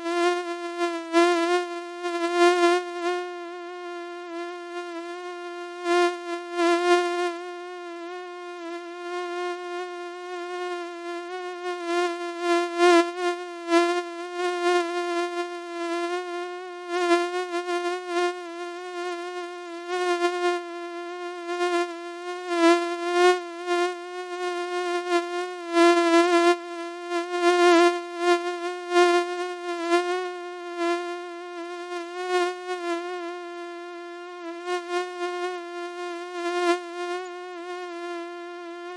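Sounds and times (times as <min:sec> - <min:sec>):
mosquito buzzing: 0:00.0 - 0:38.9.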